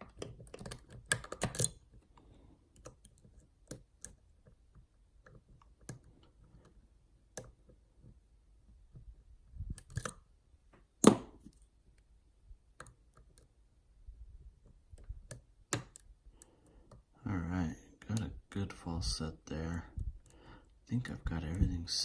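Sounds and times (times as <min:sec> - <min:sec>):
lock pick clicking: 0:00.0 - 0:01.9, 0:09.7 - 0:10.2, 0:14.9 - 0:16.1.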